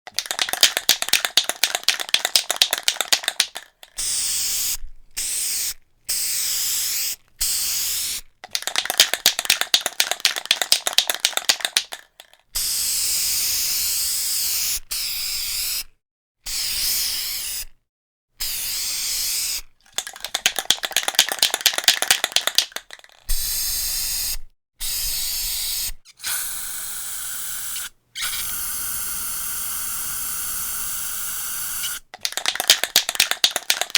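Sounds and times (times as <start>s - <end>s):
spray can ball rattling: 0.1s - 4.7s, 8.4s - 12.4s, 19.9s - 23.6s, 31.7s - 33.9s
spray paint hissing: 0.1s - 15.7s, 16.5s - 17.6s, 18.4s - 26.7s, 27.6s - 33.9s.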